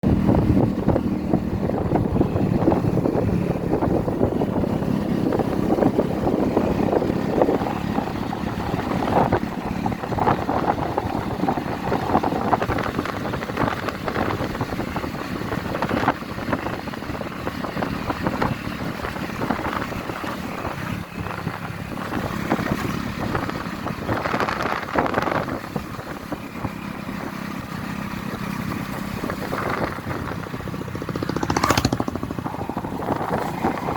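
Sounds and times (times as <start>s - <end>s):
vehicle engine and road noise: 0.0s - 33.9s.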